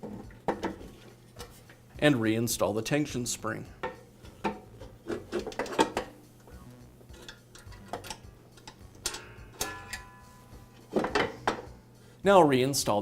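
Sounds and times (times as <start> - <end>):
metal spring clicks and taps: 7.2 - 10.1
short metallic ring: 9.1 - 10.5.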